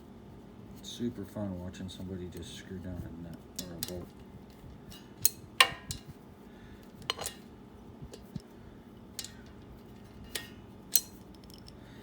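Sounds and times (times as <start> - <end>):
metal tools and bolts clinking: 7.1 - 7.5, 9.2 - 11.8.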